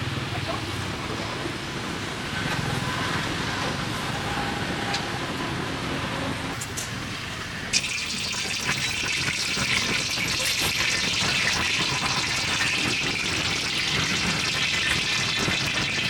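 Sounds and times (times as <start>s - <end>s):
hot oil sizzling: 6.6s - 16.0s.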